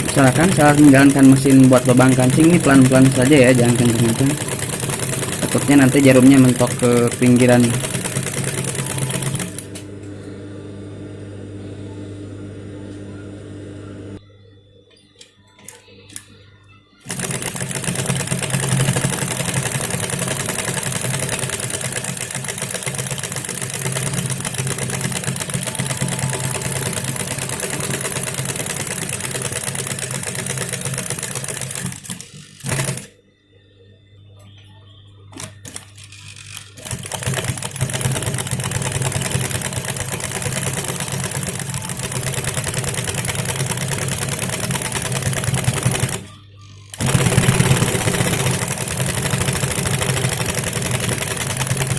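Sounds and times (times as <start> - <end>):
sewing machine clattering: 0.0 - 9.7, 17.1 - 33.1, 35.4 - 46.3, 46.9 - 51.9.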